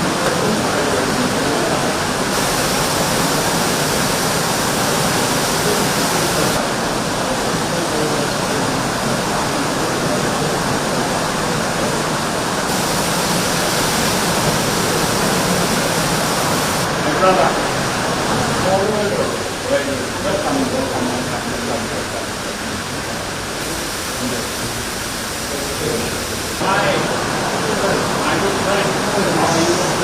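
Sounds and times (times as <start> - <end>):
loud rushing hiss: 1.7 - 7.7, 12.4 - 19.6, 23.4 - 30.0.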